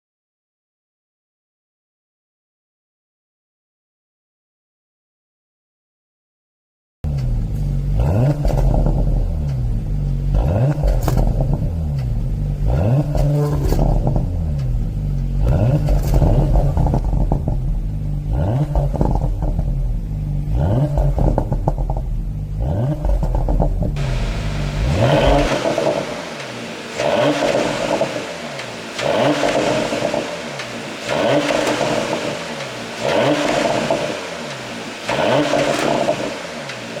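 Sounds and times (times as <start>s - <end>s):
exhaust pops: 7.1s - 19.8s, 22.9s - 37.0s
car engine revving: 7.1s - 37.0s
hiss: 24.0s - 37.0s.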